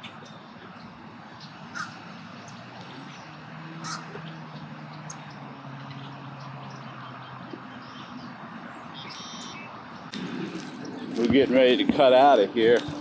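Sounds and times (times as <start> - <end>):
bird calls: 0.0 - 11.3
outdoor background noise: 0.0 - 13.0.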